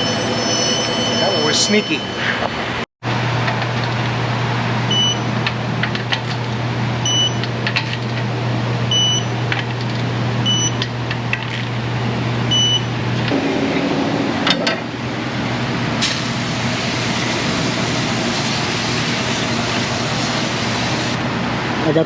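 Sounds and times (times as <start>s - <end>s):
steady low hum: 6.5s - 18.9s.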